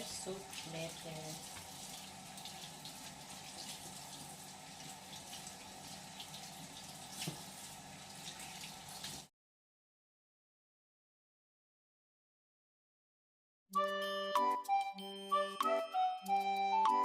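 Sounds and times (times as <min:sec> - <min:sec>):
tap water running into sink: 0:00.0 - 0:09.3.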